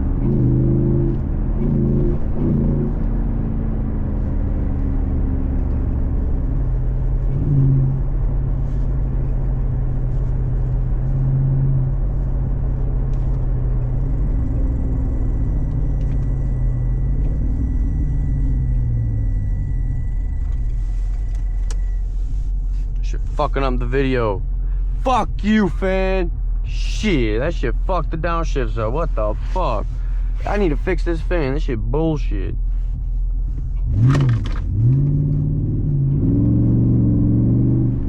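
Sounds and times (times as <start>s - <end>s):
car engine accelerating through gears: 0.0s - 27.4s, 32.6s - 38.0s
thin high whine: 14.5s - 22.3s.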